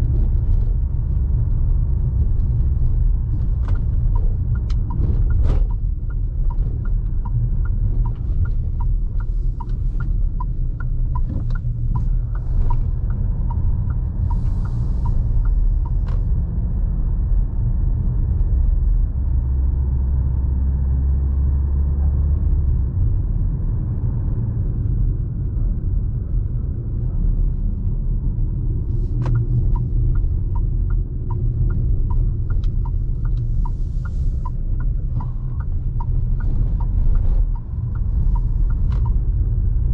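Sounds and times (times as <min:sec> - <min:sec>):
diesel engine rumble: 0:00.0 - 0:39.9
road noise: 0:00.0 - 0:39.9
light ticking: 0:02.1 - 0:16.2, 0:29.2 - 0:39.9.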